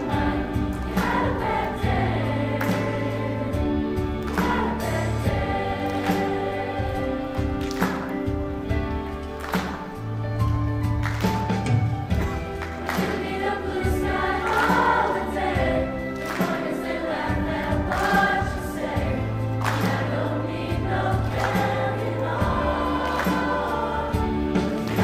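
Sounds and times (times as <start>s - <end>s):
choir singing pop song: 0.0s - 9.2s, 12.2s - 25.0s
instrumental backing with bass: 0.0s - 25.0s.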